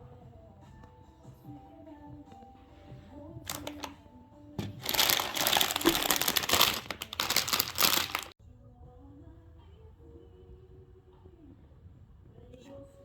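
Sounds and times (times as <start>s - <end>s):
packaging crinkling and rustling: 3.5s - 4.0s, 4.6s - 8.4s.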